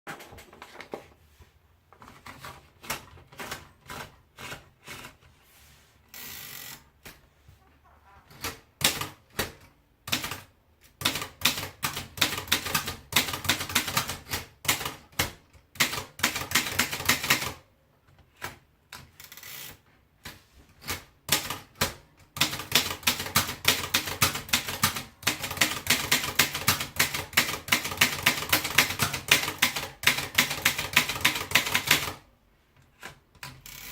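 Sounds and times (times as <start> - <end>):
manual typewriter typing: 2.0 - 5.2, 8.3 - 17.6, 20.8 - 32.3, 33.0 - 33.9.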